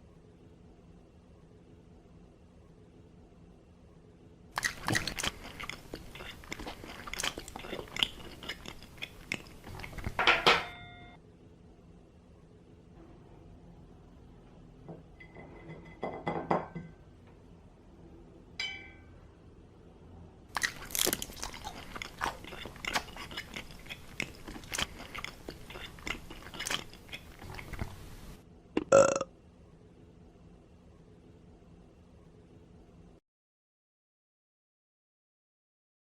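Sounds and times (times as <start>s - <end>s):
crunchy food chewing: 4.6s - 10.2s, 20.5s - 28.4s.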